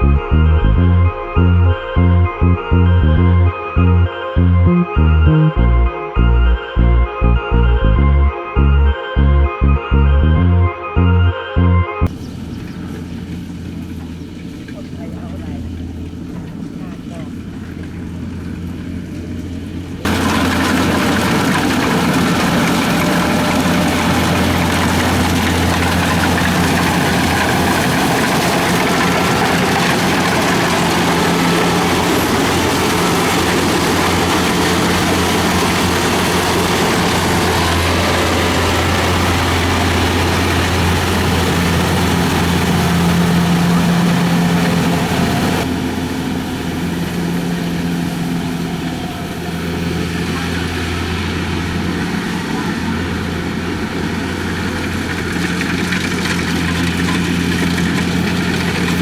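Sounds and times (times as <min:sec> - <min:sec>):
combine harvester engine drone: 0:00.0 - 0:11.2, 0:12.0 - 0:59.0.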